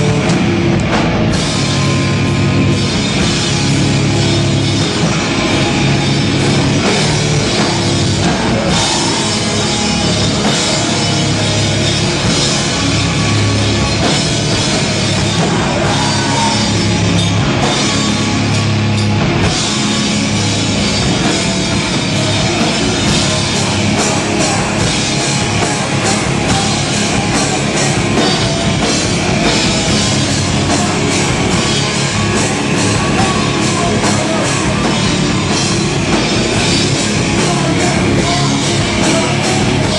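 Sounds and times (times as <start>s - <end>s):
drum kit: 0.0s - 39.9s
hardcore band playing live: 0.0s - 39.9s.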